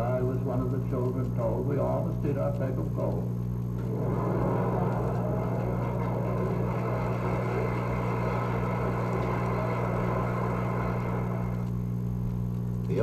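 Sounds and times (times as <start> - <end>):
mains hum: 0.0 - 13.0
audience applauding: 3.8 - 11.7.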